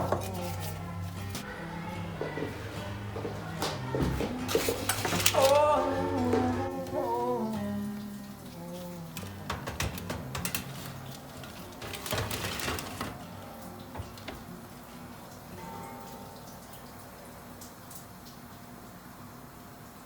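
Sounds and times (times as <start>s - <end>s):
acoustic song with guitar: 0.0s - 14.6s.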